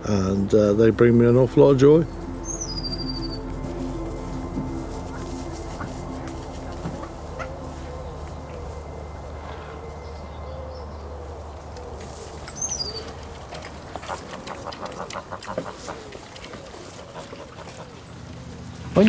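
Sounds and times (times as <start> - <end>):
small bird chirp: 2.1 - 3.5, 11.8 - 13.3.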